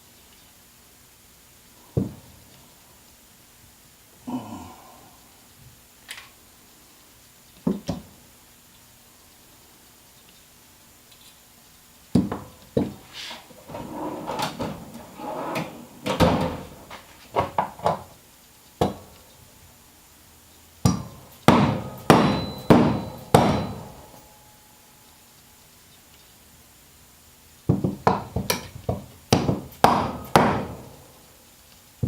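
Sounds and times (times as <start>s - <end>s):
sharp metal strikes: 20.8s - 24.5s.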